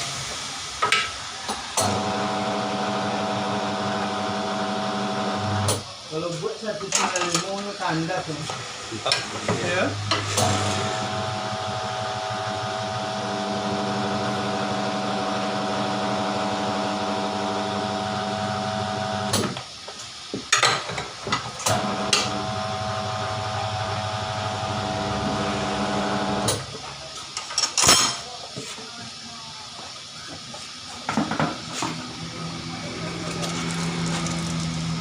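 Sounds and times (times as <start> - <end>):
electric motor humming: 8.5 - 19.4, 31.8 - 35.0.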